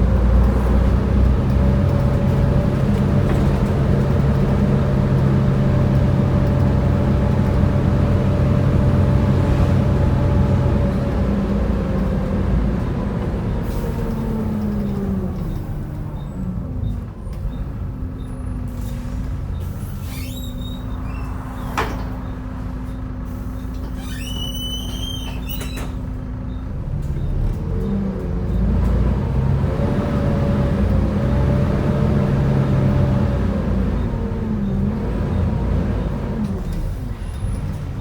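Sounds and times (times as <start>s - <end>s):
bus diesel engine idling: 0.0s - 29.6s
short high squeals: 19.8s - 21.8s, 23.6s - 26.0s.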